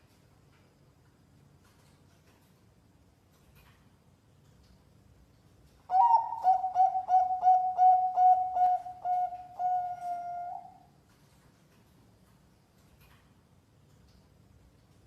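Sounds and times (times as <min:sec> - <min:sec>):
dove cooing: 0:05.9 - 0:10.9.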